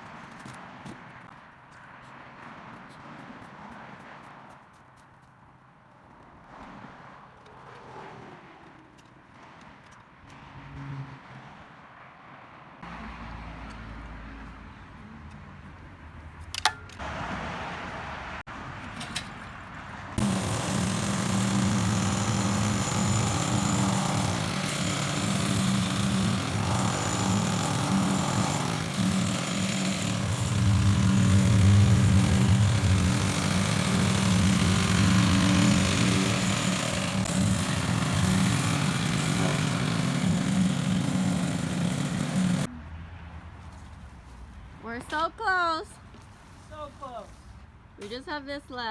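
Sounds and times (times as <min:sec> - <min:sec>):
excavator engine running: 0:20.2 - 0:42.7.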